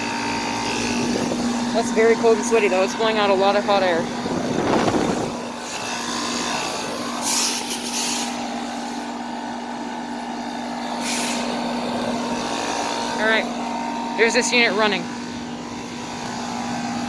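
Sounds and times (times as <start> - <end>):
compressor hum: 0.0 - 17.0
fan airflow noise: 0.0 - 17.0
bursts of hiss: 7.2 - 9.1, 11.0 - 11.6.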